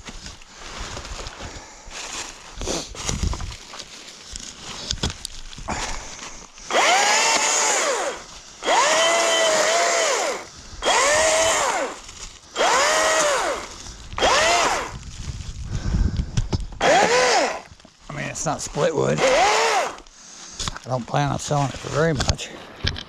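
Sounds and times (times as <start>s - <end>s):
chainsaw revving through wood: 6.6s - 12.0s, 12.6s - 15.0s, 16.8s - 17.7s, 19.1s - 20.1s.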